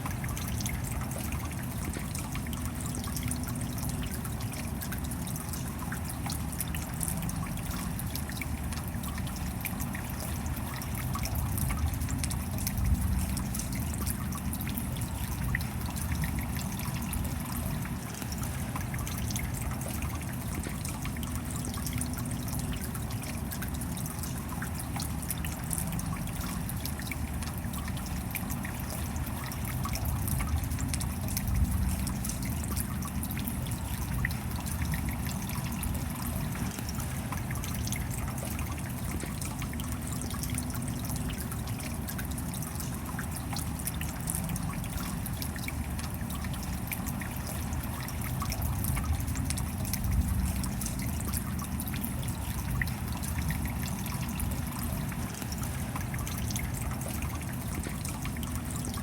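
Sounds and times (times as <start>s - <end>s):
rain falling: 23.4s - 40.3s, 41.1s - 58.8s.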